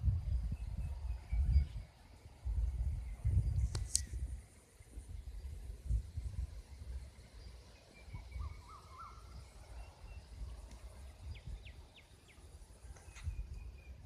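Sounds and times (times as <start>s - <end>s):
wind buffeting microphone: 0.0s - 14.0s
small birds calling: 7.3s - 14.0s.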